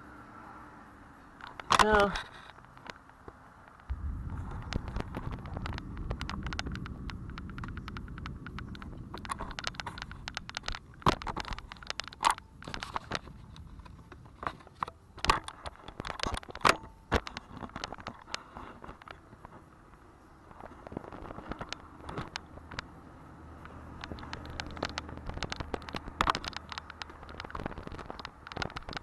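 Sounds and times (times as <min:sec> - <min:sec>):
low rumbling: 0:03.8 - 0:14.4
heavy raindrops on hard surface: 0:03.9 - 0:11.9.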